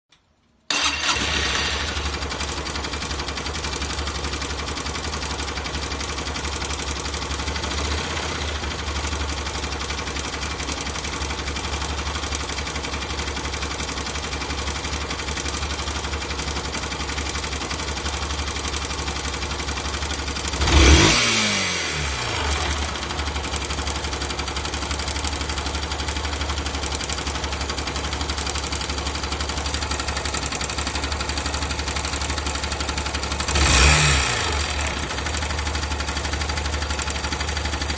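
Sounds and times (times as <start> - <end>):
motorcycle engine idling with rattle: 0.1 - 37.9
engine revving: 0.7 - 2.4, 20.4 - 23.6, 33.4 - 35.3.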